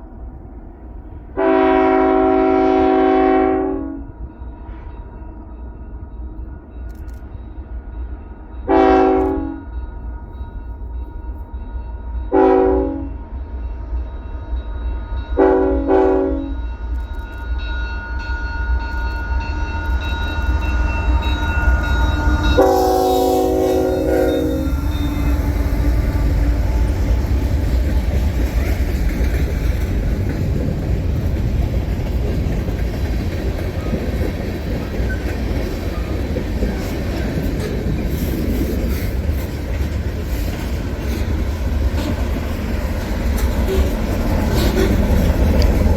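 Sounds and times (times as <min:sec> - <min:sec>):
train rumbling past: 0:00.0 - 0:45.9
locomotive air horn blasts: 0:01.4 - 0:04.1, 0:08.7 - 0:09.7, 0:12.3 - 0:13.3, 0:15.4 - 0:16.6, 0:20.9 - 0:27.3.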